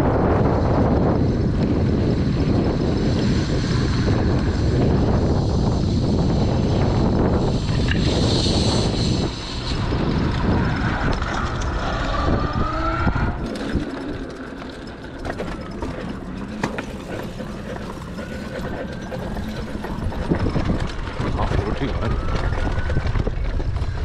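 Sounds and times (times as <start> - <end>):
wind rumble on microphone: 0.0 - 24.0
electric motor whining: 0.2 - 24.0
clicks and rattles: 13.4 - 24.0.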